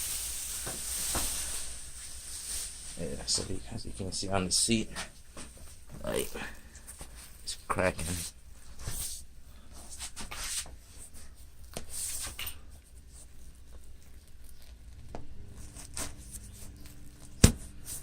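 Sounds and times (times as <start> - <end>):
faint steady hum: 0.0 - 18.0
rustling and scraping of objects: 0.0 - 18.0.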